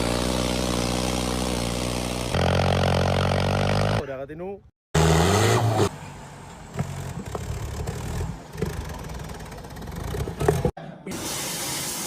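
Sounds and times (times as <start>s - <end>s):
steady hiss: 11.2s - 12.0s.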